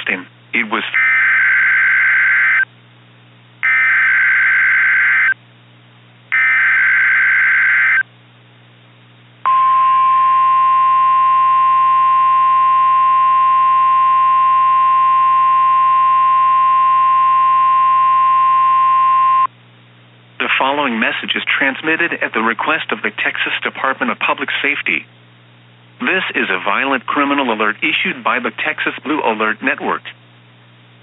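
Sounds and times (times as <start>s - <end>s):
steady alarm tone: 1.0s - 2.7s, 3.6s - 5.4s, 6.3s - 8.0s.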